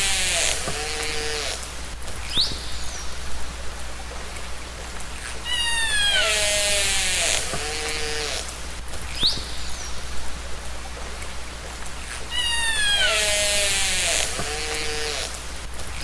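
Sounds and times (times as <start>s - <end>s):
underwater hiss and hum: 0.0s - 16.0s
orca calls underwater: 12.3s - 13.6s.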